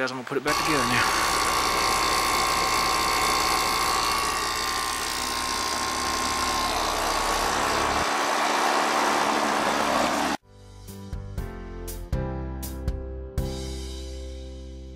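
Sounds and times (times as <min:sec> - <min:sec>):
fan noise: 0:00.5 - 0:10.4
heat pump unit humming: 0:00.5 - 0:10.4.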